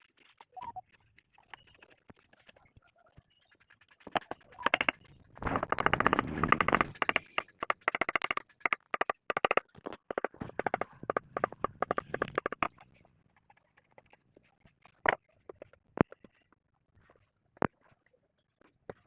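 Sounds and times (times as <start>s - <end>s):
rapid sharp knocks: 4.2s - 12.7s.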